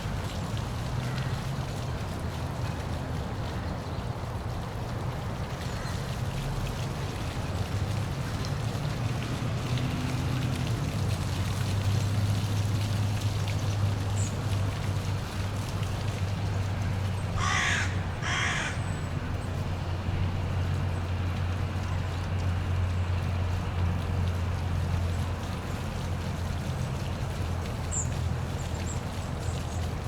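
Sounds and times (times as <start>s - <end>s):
crow cawing: 1.0s - 1.3s, 17.4s - 18.8s
waterfall rushing: 6.8s - 18.8s.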